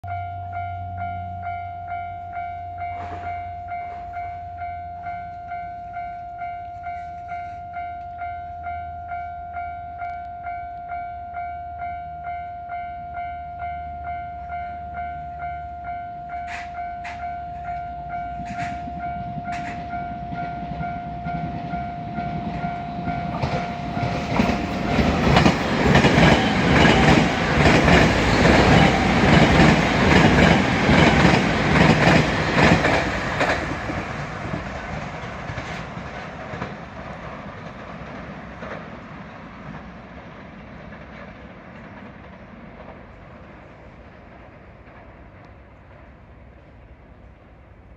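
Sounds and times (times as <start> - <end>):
electric train rumbling past: 0.0 - 47.9
level-crossing alarm ringing: 0.1 - 33.2
train wheels clacking on rail joints: 16.3 - 46.2.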